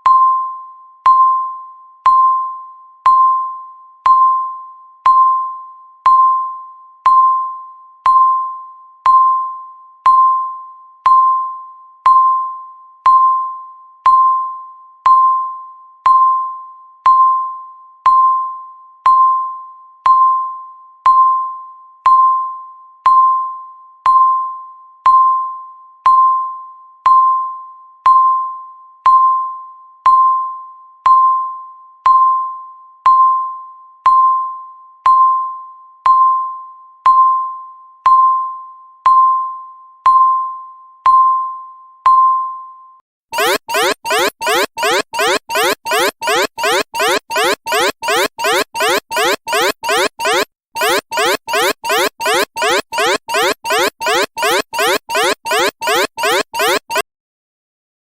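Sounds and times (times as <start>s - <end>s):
bell-like timer chime: 43.4s - 57.0s.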